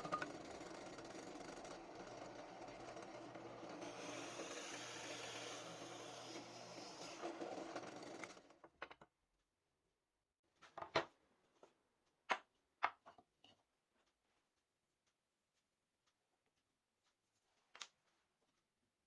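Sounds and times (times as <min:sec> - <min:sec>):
small power tool whirring: 0:00.0 - 0:08.5.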